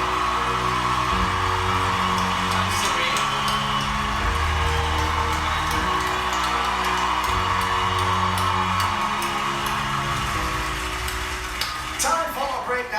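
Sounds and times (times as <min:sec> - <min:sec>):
audience cheering and applauding: 0:00.0 - 0:12.9
upbeat show music: 0:00.0 - 0:12.9.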